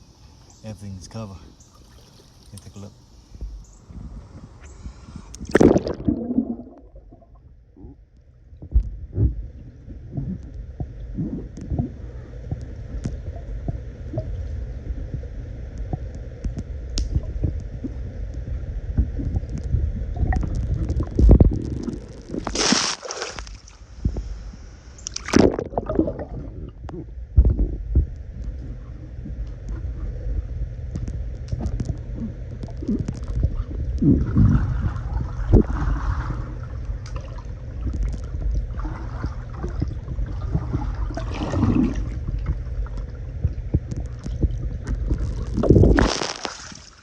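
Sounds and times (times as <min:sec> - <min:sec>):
pool water sloshing and gurgling: 0:01.7 - 0:02.9, 0:05.4 - 0:15.3, 0:18.8 - 0:24.1, 0:25.0 - 0:30.5, 0:31.5 - 0:47.0
low rumble: 0:03.4 - 0:22.6, 0:23.4 - 0:46.1
loud water splashes: 0:21.2 - 0:23.8, 0:45.6 - 0:47.0.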